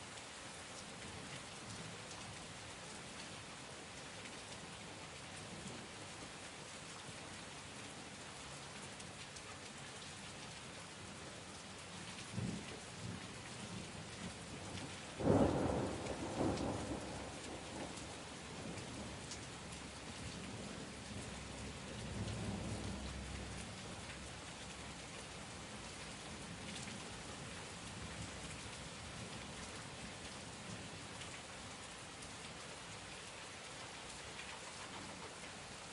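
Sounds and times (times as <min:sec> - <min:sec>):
steady rain falling: 0:00.0 - 0:35.9
thunder rumbling: 0:15.2 - 0:19.1.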